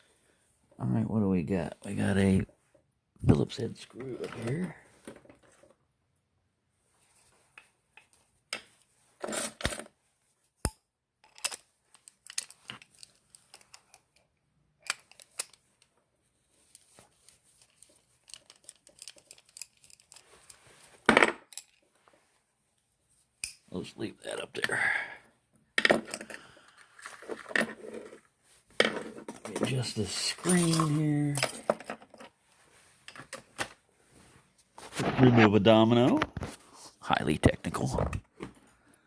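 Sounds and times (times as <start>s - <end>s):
metal parts clattering: 17.6s - 20.6s.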